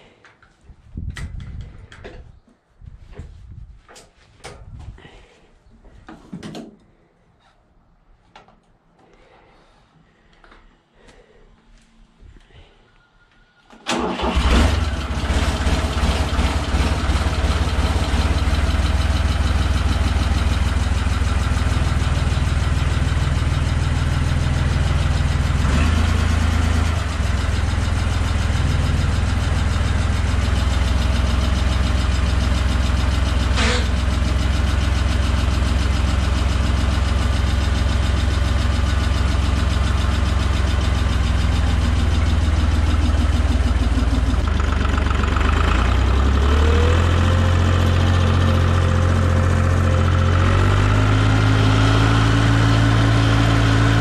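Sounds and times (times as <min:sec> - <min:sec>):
tractor diesel engine idling: 0:13.9 - 0:54.0.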